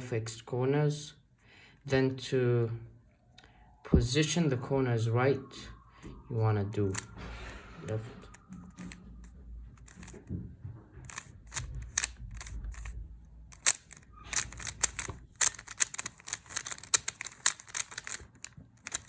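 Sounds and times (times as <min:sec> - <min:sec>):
puzzle cube clicking as turned: 0:06.8 - 0:07.2, 0:07.9 - 0:09.0, 0:09.8 - 0:10.2, 0:11.0 - 0:19.0.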